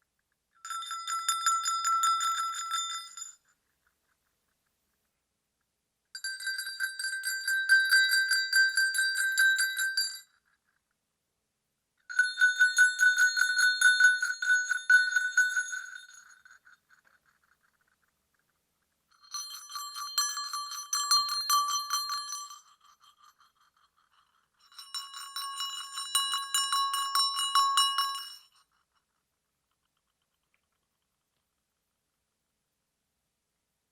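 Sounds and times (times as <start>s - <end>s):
sleigh bells jingling: 0.6s - 3.4s, 6.2s - 10.2s, 12.1s - 16.8s, 19.2s - 28.7s.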